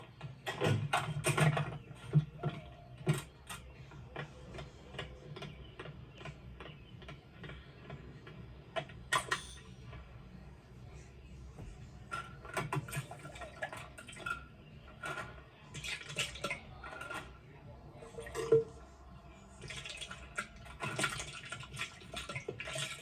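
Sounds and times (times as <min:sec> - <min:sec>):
clicks and knocks of small objects: 0:11.6 - 0:17.5.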